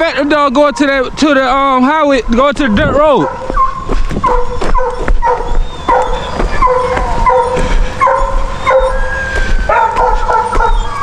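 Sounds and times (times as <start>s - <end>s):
dogs yipping and whining: 3.1s - 11.0s.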